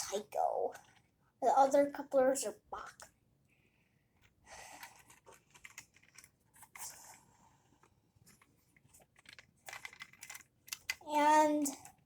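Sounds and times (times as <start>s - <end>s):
plastic model clicking and rustling: 4.2s - 7.2s, 7.8s - 12.0s.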